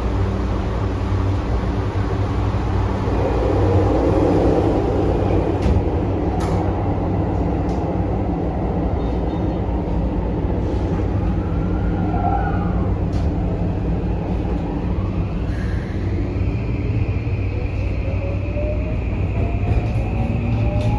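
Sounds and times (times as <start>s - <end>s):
train wheels rumbling on rail: 0.0s - 20.9s
rail joint clicks: 5.2s - 8.2s.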